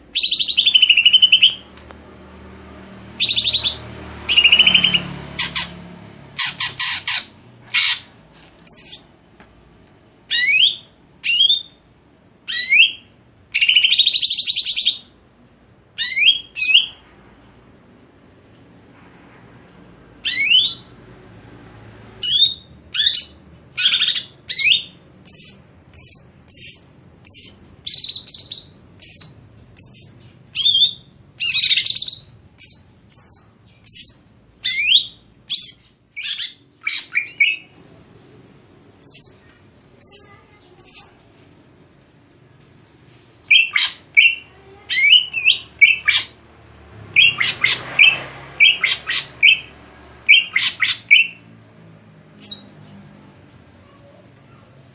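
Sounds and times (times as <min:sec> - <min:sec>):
bird whistling song: 0:00.1 - 0:01.7, 0:03.2 - 0:05.8, 0:08.7 - 0:09.2, 0:10.3 - 0:15.1, 0:16.0 - 0:17.0, 0:20.2 - 0:20.9, 0:22.2 - 0:37.7, 0:39.0 - 0:41.2, 0:43.4 - 0:46.4, 0:47.1 - 0:51.4, 0:52.4 - 0:52.8.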